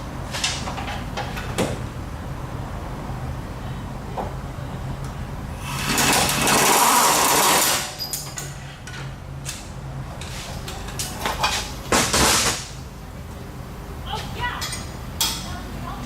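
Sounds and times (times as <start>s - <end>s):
power tool running: 5.6s - 7.9s.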